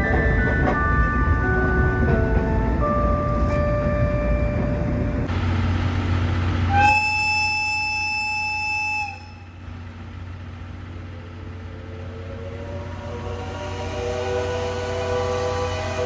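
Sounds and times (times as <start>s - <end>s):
train noise: 0.0s - 16.0s
train horn: 6.7s - 9.6s, 12.5s - 16.0s.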